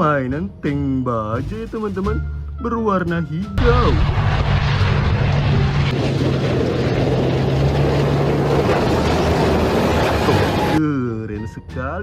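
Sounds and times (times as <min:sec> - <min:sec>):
rushing noise: 0:03.6 - 0:10.8
tank engine running: 0:03.8 - 0:10.8.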